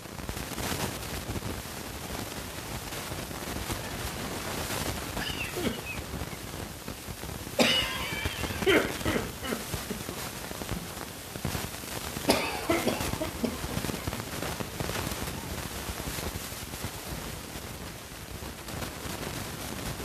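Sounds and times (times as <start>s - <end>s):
steady background hiss: 0.0s - 20.0s
person coughing: 5.2s - 6.0s, 7.6s - 10.0s, 12.3s - 13.6s.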